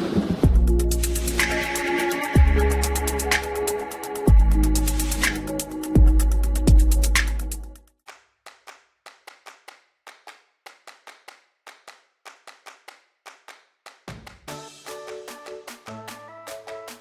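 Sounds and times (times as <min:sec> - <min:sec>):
electronic background music: 0:00.4 - 0:07.8, 0:14.5 - 0:17.0.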